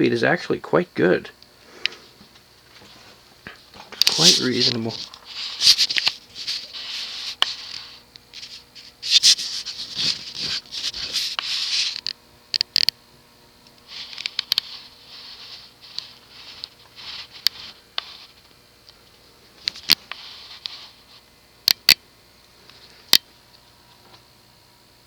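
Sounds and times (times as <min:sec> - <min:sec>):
ceiling fan hum: 0:00.0 - 0:25.0
scratchy rustling: 0:04.1 - 0:12.1, 0:13.9 - 0:18.4.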